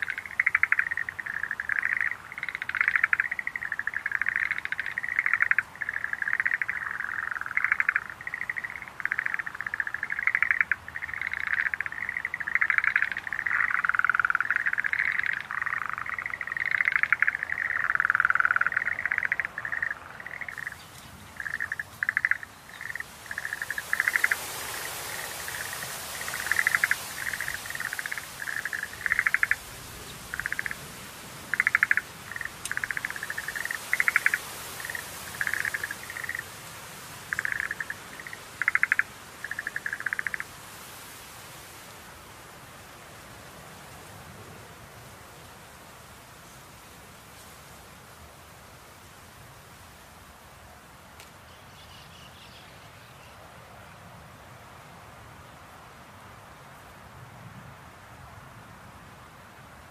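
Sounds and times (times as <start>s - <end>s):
tree frogs trilling: 0.0s - 41.0s
steady high hiss: 0.0s - 59.9s.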